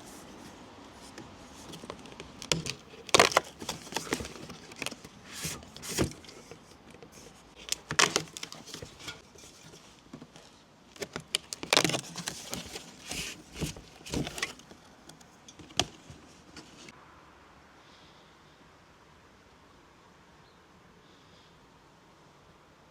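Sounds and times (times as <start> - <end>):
cardboard and packaging rustling: 0.0 - 16.9
clicks and knocks of handling: 0.2 - 16.9.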